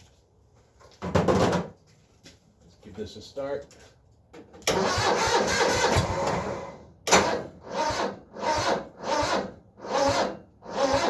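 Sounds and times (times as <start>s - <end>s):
engine starter cranking slowly: 4.6s - 11.0s.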